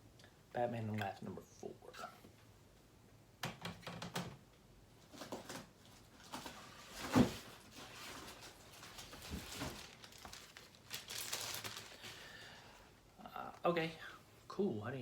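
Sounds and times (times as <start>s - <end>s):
plastic cases clicking and knocking: 3.4s - 4.4s.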